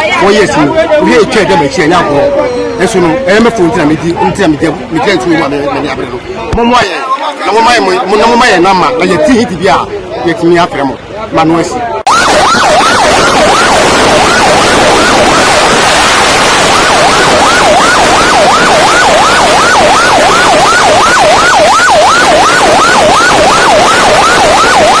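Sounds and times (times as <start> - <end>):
siren in fast yelp: 12.1 - 25.0.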